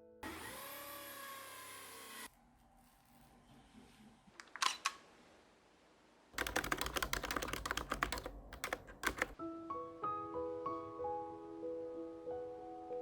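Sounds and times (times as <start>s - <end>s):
piano music: 6.4s - 13.0s.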